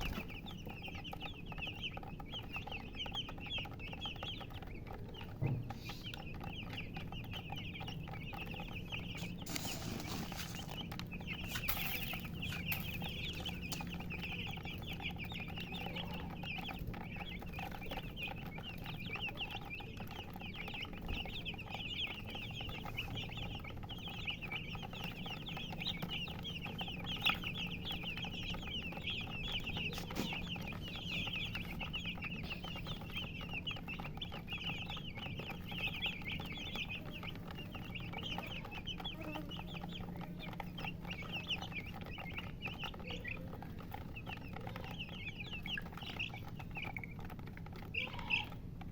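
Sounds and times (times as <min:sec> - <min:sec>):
baby chicks peeping: 0:00.0 - 0:48.9.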